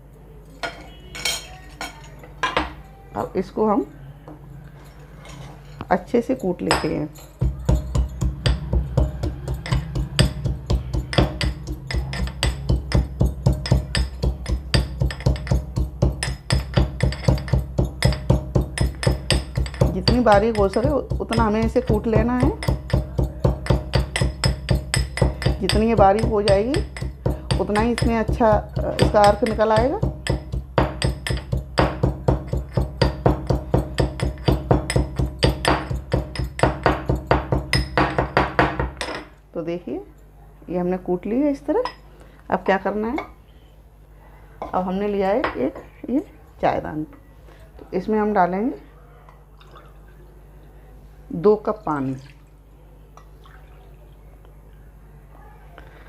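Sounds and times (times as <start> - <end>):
pestle pounding in a mortar: 6.7 - 39.2.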